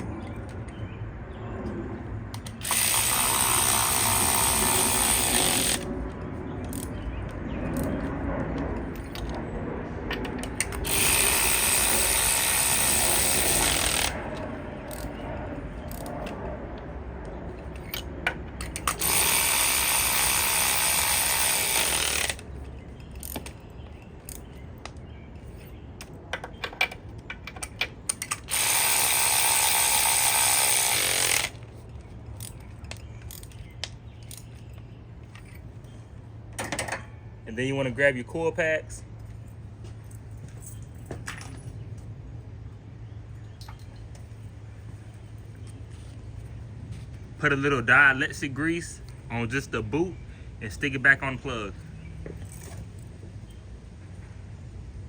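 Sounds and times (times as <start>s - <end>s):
ratchet clicks: 18.6s - 22.4s, 27.5s - 31.6s.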